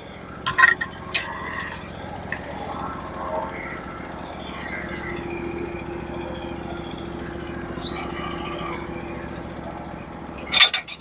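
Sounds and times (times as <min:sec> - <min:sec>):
sawmill engine drone: 0:00.0 - 0:11.0
sharp metallic clank: 0:10.5 - 0:11.0.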